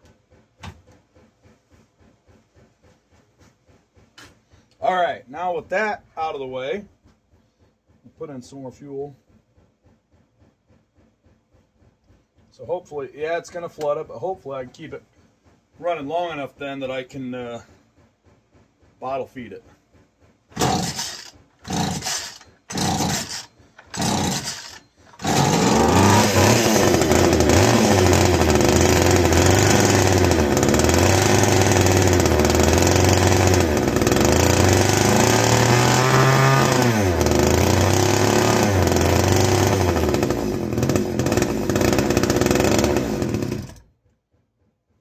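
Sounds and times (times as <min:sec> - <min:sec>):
chainsaw engine revving: 0:20.5 - 0:43.9
chainsaw starter pulls: 0:20.5 - 0:44.0.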